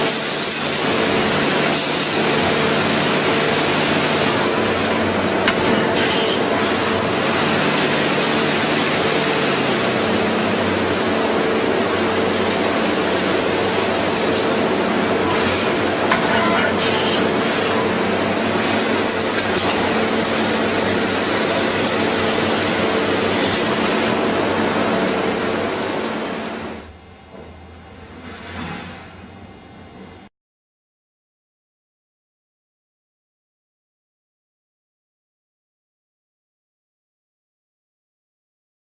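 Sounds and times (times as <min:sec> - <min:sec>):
high machine whine: 0:00.0 - 0:30.3
machine hiss and hum: 0:00.0 - 0:30.3.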